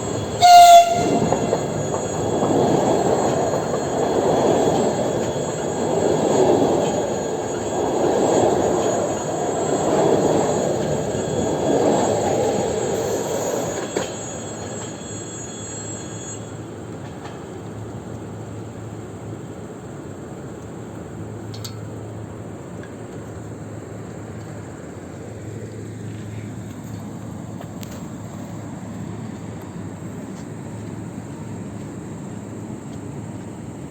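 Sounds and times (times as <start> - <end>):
high steady squeal: 0.0 - 17.4
train wheels rumbling on rails: 0.0 - 33.9.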